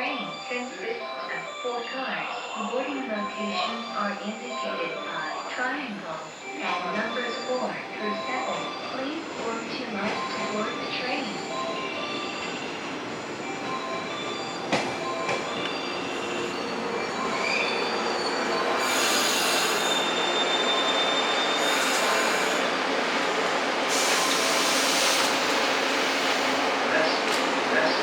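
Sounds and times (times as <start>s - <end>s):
electric train rolling: 8.6s - 28.0s.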